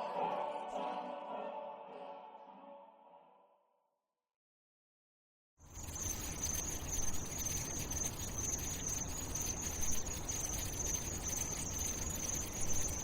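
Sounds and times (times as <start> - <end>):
high-pitched insect-like trill: 5.7 - 13.0
light crackle: 5.7 - 13.0.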